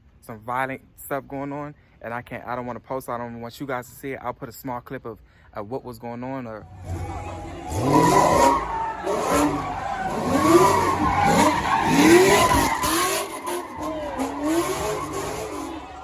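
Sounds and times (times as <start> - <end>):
car engine revving: 6.6 - 16.0
tires squealing on pavement: 6.6 - 16.0.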